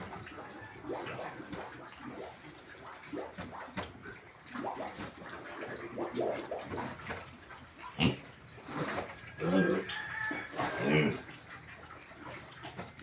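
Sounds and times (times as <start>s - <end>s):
pigs grunting and squealing: 4.5s - 11.9s.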